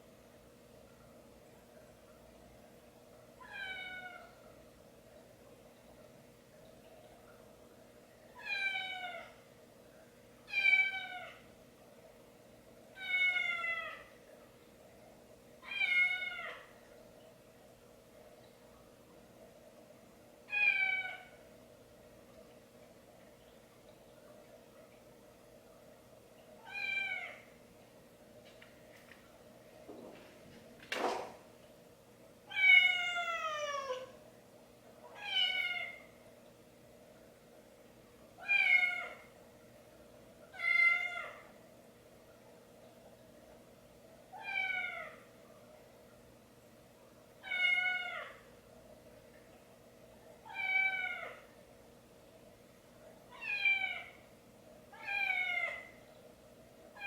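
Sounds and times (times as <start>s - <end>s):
cat meowing: 3.4s - 4.3s, 32.5s - 34.1s, 47.4s - 48.4s, 50.5s - 51.4s, 53.3s - 54.2s, 55.0s - 55.9s.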